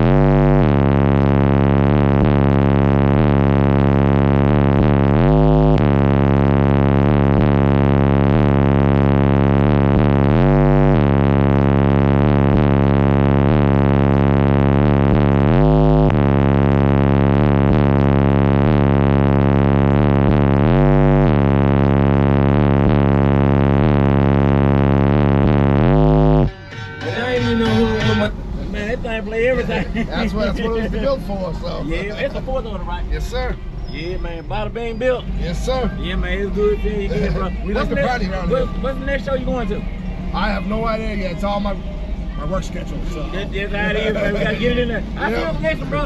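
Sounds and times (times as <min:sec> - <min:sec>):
loud sustained bass drone: 0:00.0 - 0:46.0.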